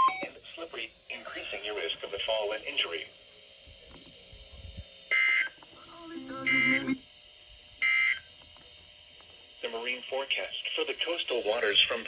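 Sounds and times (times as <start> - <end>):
raspy digital data bursts: 5.8 - 7.0, 10.2 - 12.0.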